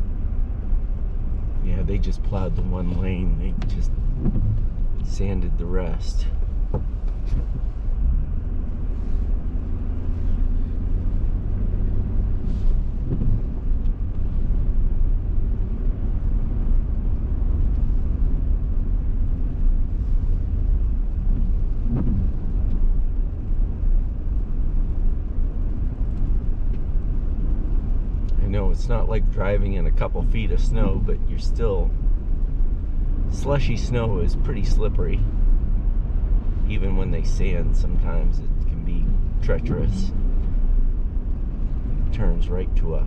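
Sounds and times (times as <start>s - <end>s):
vehicle cab road rumble: 0.0s - 43.0s.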